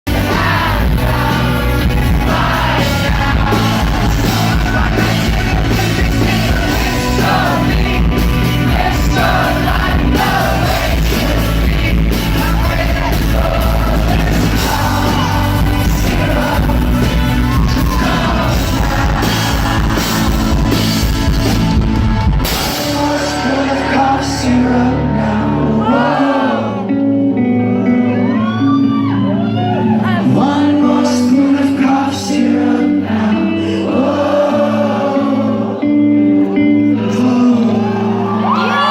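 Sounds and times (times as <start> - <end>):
drums: 0.0 - 24.8
singing: 0.1 - 21.0, 29.6 - 36.0
live rock band playing: 0.1 - 38.9.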